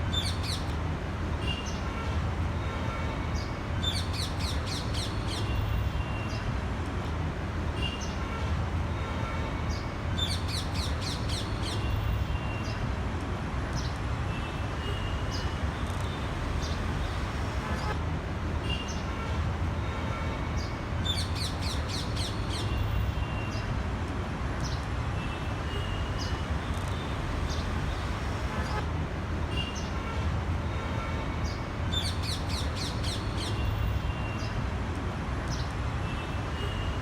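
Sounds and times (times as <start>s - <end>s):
birds chirping and calling: 31.9s - 33.6s.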